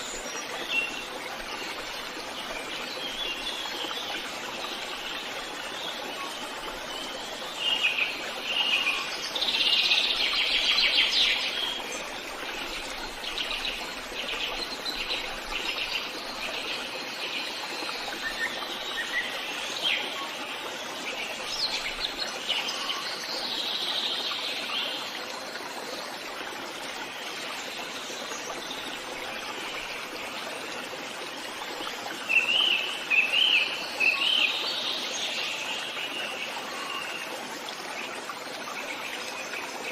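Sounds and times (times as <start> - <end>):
birds singing and calling: 0.0 - 25.3, 31.4 - 37.3
rushing water or wind: 0.0 - 39.9.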